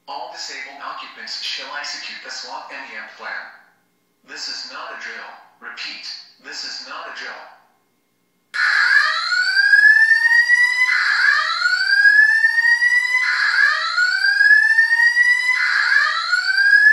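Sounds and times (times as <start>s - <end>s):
fire alarm whooping tone: 8.6s - 16.9s.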